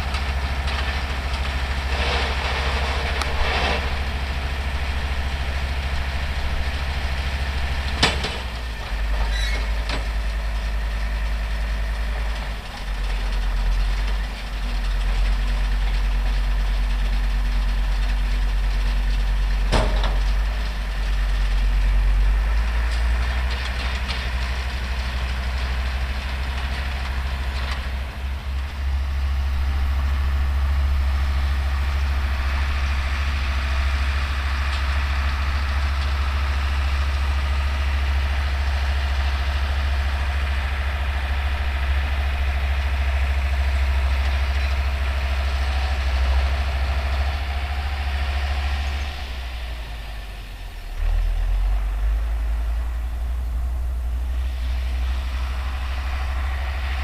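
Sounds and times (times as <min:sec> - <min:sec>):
round baler working hay: 0:00.0 - 0:57.0
tractor diesel engine running: 0:00.0 - 0:57.0.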